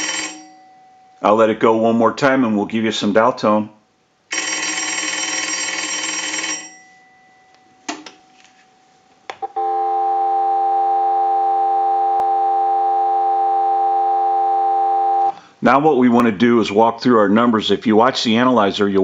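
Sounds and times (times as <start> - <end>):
telephone bell ringing: 0.0 - 1.0, 4.3 - 7.6
dial tone: 9.4 - 15.3.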